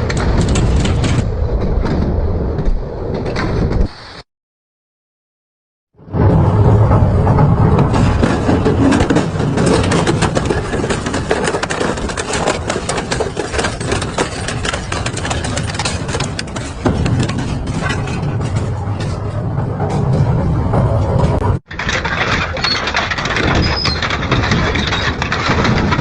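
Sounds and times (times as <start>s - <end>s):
metal cracking and snapping: 7.3s - 20.0s, 21.2s - 26.0s.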